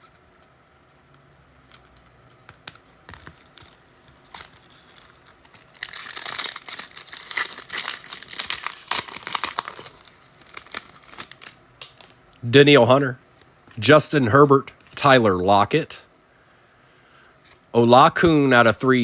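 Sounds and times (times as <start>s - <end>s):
wrapper tearing and crinkling: 3.1s - 12.2s.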